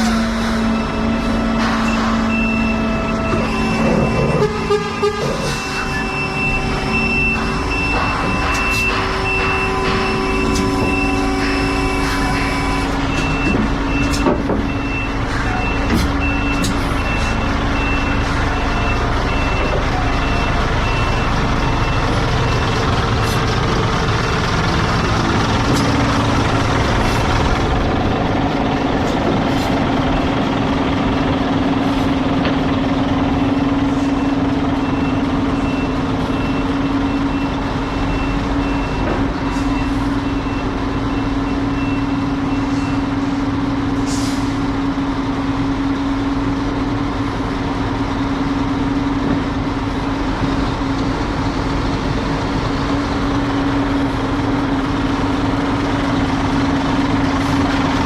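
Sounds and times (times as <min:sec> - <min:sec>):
truck diesel engine running: 0:00.0 - 0:58.0
reversing alarm beeps: 0:00.7 - 0:23.3, 0:34.1 - 0:43.3.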